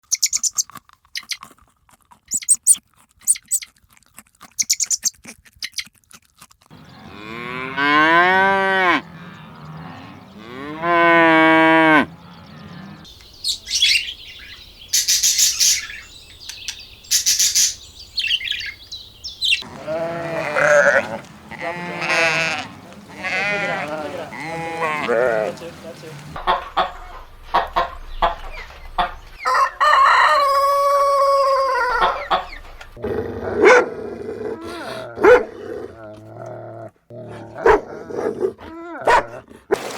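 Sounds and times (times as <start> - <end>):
farm animal calls: 2.3 - 3.7, 6.7 - 33.0
wavering bleats: 19.6 - 26.4.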